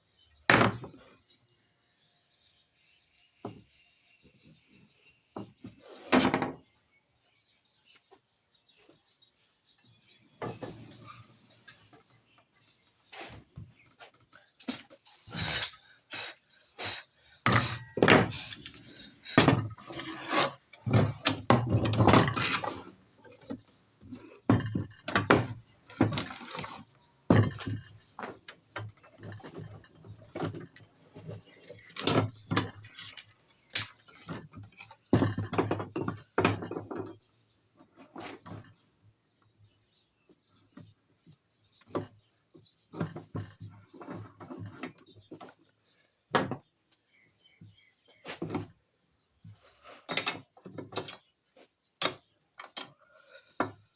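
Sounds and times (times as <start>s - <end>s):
tools knocking and clinking on metal: 17.4s - 37.2s, 50.1s - 51.3s, 52.0s - 53.0s.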